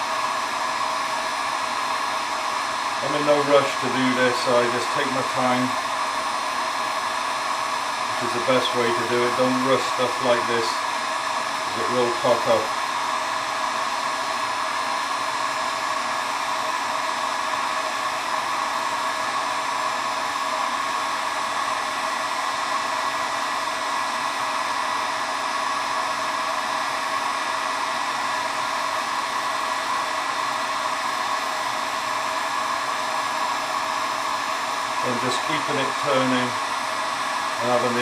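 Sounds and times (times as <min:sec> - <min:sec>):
heat gun blowing hot air: 0:00.0 - 0:38.0.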